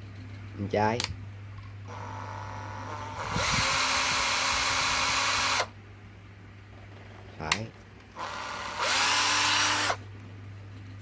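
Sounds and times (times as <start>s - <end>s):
cordless drill running: 1.9s - 5.7s, 8.2s - 10.0s.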